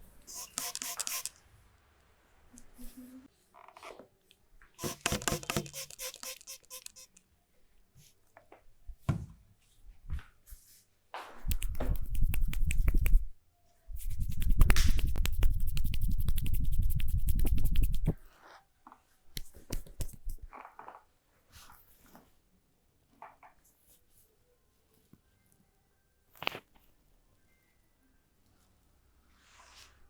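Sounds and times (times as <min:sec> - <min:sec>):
hands beating percussive massage: 0:11.5 - 0:13.3, 0:14.0 - 0:18.2, 0:19.4 - 0:20.4.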